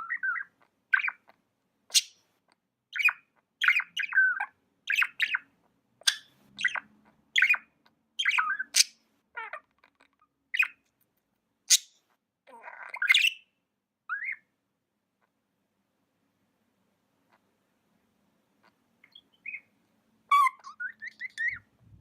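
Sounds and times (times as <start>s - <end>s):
budgerigars chirping: 0.0s - 2.2s, 2.9s - 10.8s, 11.7s - 13.5s, 14.1s - 14.5s, 19.0s - 21.7s.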